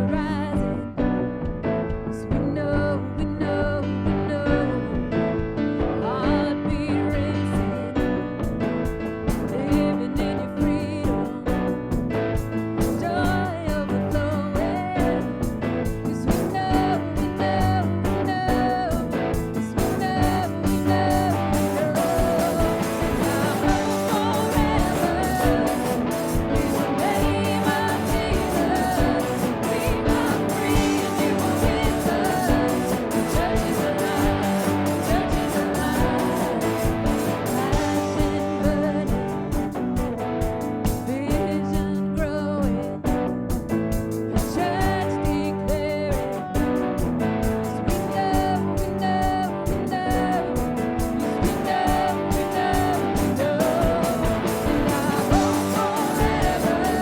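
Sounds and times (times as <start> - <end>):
live band with guitar: 0.0 - 57.0
singing: 16.1 - 39.3, 47.9 - 57.0.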